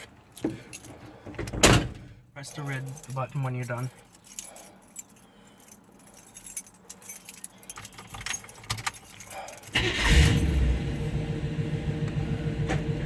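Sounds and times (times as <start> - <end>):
keys jangling in ignition: 0.3 - 1.3, 2.4 - 10.7
truck engine starting and running: 9.7 - 13.0.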